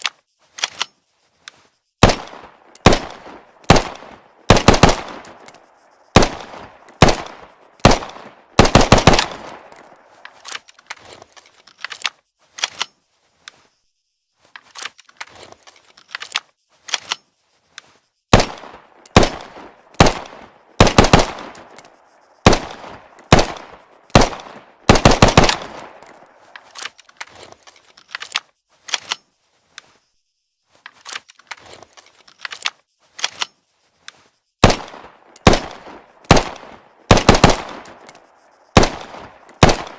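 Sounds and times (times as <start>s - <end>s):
pistol shots with ringing echo: 2.0s - 5.5s, 6.1s - 10.0s, 18.3s - 21.8s, 22.4s - 26.3s, 34.6s - 38.2s, 38.8s - 39.9s.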